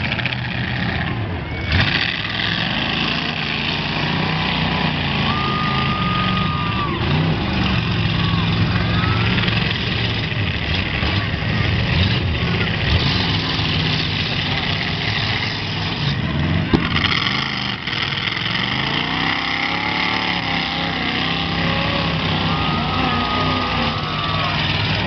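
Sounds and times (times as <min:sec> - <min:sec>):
car engines revving: 0:00.0 - 0:25.0.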